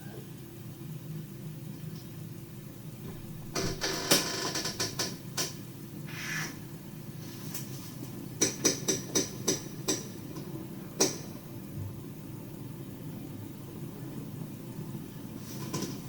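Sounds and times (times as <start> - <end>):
steady low hum: 0.0 - 16.0
sharp knocks or clicks: 8.4 - 11.3.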